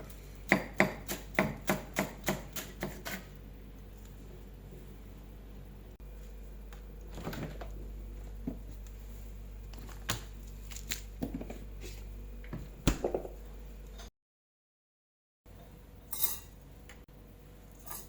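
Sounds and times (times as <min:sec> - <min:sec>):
steady low hum: 0:00.0 - 0:14.1.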